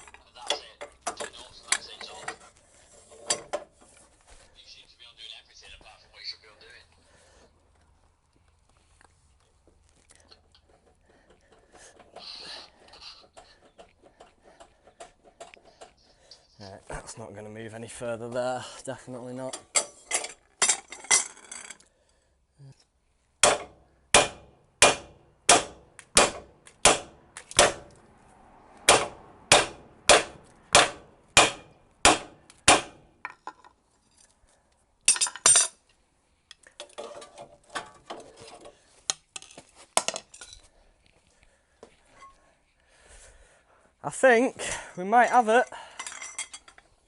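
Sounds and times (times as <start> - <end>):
hammer striking steel: 23.4 - 27.9, 28.9 - 33.0
light metallic clatter: 44.7 - 47.0.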